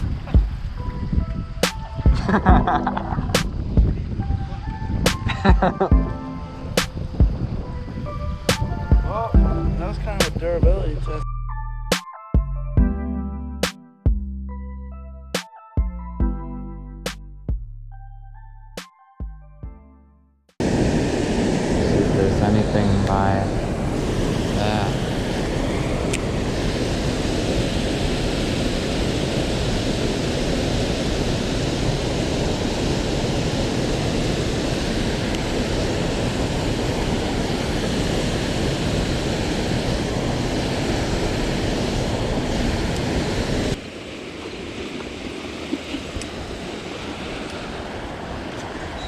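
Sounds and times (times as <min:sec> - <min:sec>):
loud low rushing noise: 0:01.7 - 0:05.2.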